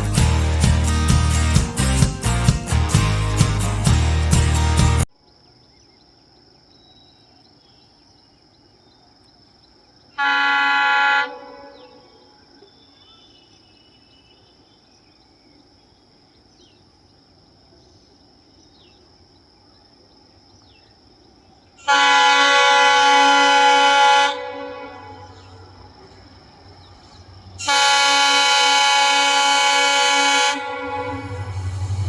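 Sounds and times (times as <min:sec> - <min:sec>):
locomotive horn blast: 0:10.2 - 0:12.1, 0:21.8 - 0:32.0
steady high-pitched tone: 0:30.4 - 0:32.0.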